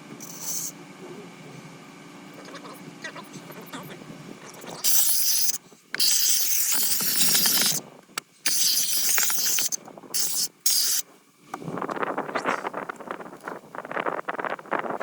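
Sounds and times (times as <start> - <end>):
compressed air hissing bursts: 0.2 - 0.7, 4.8 - 7.8, 8.4 - 11.0.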